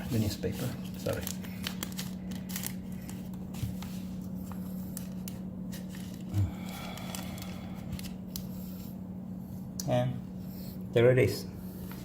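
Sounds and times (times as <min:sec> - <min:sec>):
steady low hum: 0:00.0 - 0:12.0
tape and paper clicks and rustles: 0:00.1 - 0:08.8.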